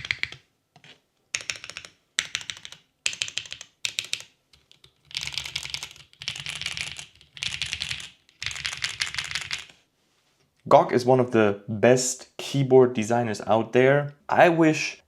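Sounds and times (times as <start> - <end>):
fast typing on mechanical keyboard: 0.0 - 0.4, 1.3 - 9.7.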